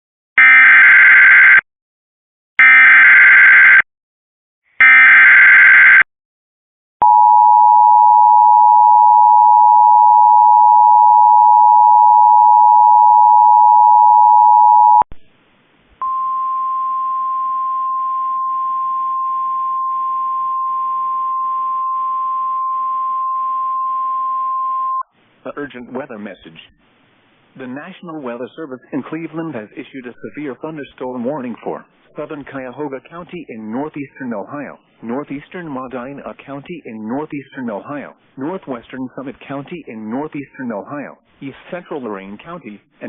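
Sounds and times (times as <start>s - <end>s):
single steady tone: 7.0s - 15.2s, 16.0s - 25.0s.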